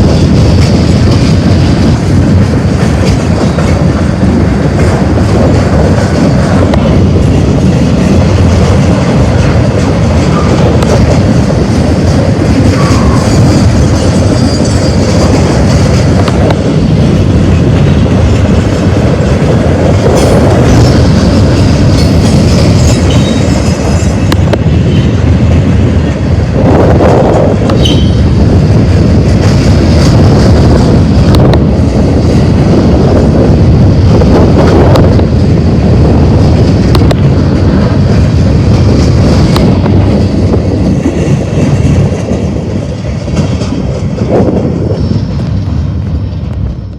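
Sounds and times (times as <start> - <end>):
train wheels clacking over rails: 0.0 - 46.9
high wheel squeals: 27.8 - 28.2.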